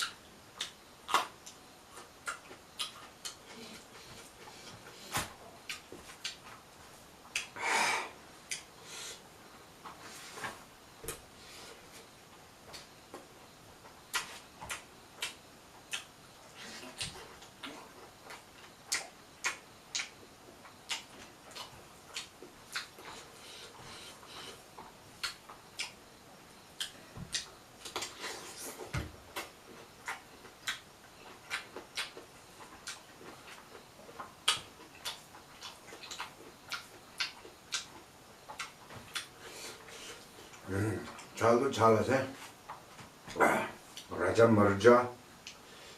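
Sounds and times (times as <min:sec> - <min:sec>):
sharp eating smacks: 0:00.0 - 0:06.4, 0:07.3 - 0:07.6, 0:14.1 - 0:20.2, 0:20.9 - 0:26.0, 0:26.8 - 0:39.9
chewing: 0:00.0 - 0:06.6, 0:13.8 - 0:26.0, 0:26.8 - 0:41.4.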